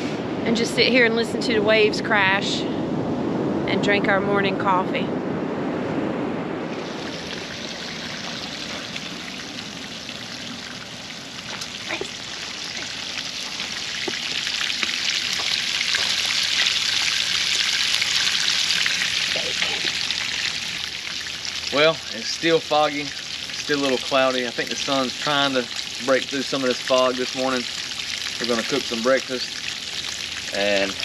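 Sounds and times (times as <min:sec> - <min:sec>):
bacon sizzling on a griddle: 0:06.8 - 0:31.0.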